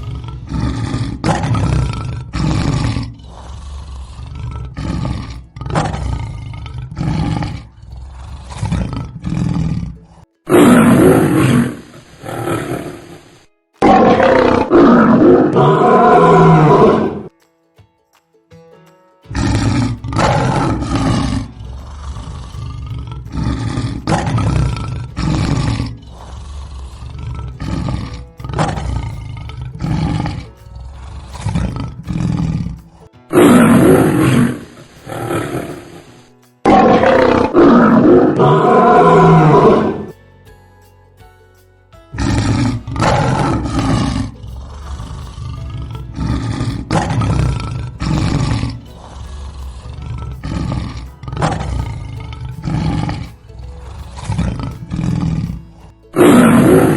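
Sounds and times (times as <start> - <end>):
lions roaring: 0.0 - 17.3, 19.3 - 40.2, 42.2 - 56.9.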